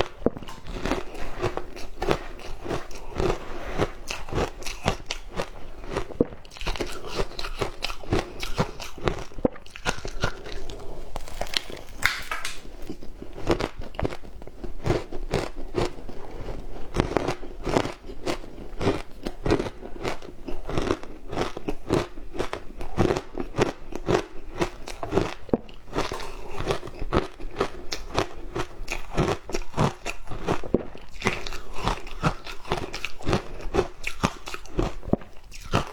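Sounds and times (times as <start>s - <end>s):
ice being bitten and chewed: 0.0s - 35.9s.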